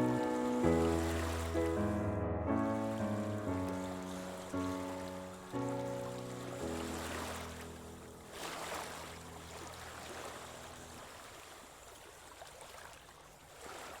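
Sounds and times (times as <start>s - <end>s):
background music sustained chords: 0.0s - 11.2s
water rushing like waves: 0.0s - 14.0s.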